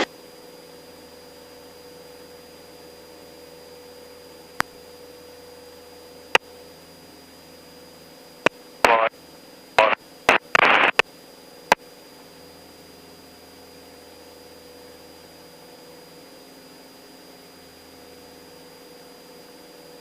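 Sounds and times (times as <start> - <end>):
radio hiss and hum: 8.4 - 9.2, 9.8 - 11.1
garbled radio voice: 8.8 - 9.1, 9.8 - 11.0
sharp clicks: 10.3 - 11.0.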